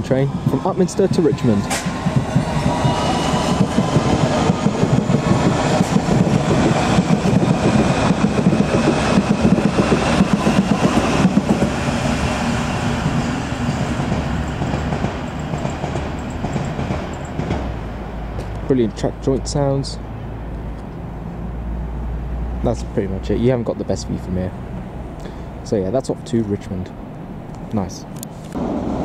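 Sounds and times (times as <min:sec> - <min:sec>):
train wheels clattering over joints: 0:01.3 - 0:12.1, 0:13.0 - 0:17.8.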